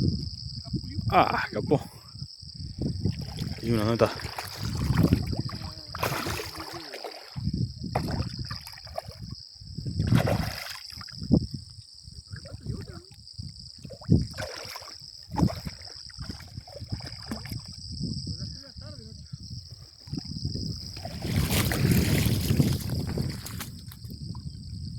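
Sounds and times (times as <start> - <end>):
water sloshing and splashing: 2.8 - 11.4, 13.7 - 17.8, 20.0 - 23.9.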